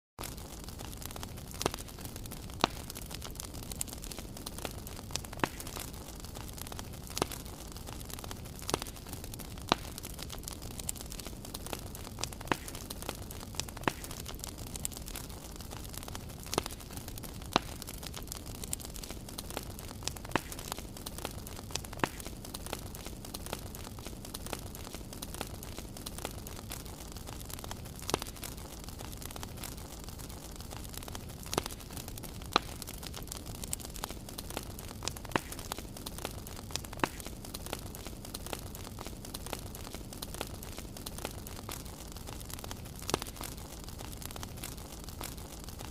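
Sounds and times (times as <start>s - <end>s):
fire crackling: 0.2s - 45.9s
fire pops and snaps: 0.2s - 45.9s.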